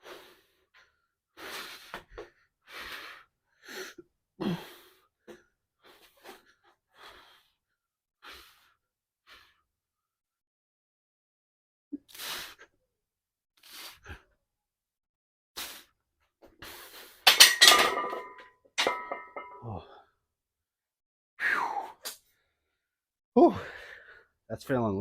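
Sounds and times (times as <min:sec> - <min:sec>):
sharp breaths and exhales: 0:00.0 - 0:00.8, 0:01.4 - 0:05.1, 0:12.1 - 0:12.7, 0:13.6 - 0:14.2, 0:15.6 - 0:16.0, 0:16.6 - 0:18.4
barbell clanking on rack: 0:17.3 - 0:19.6.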